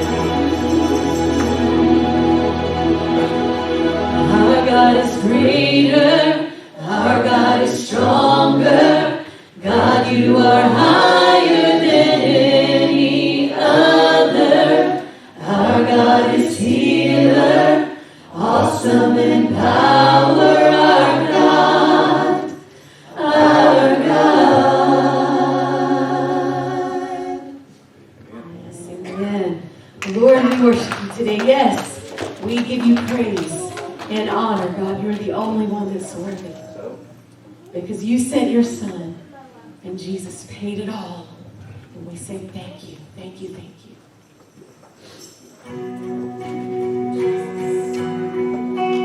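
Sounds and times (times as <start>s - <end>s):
choir singing a hymn: 0.0s - 27.7s.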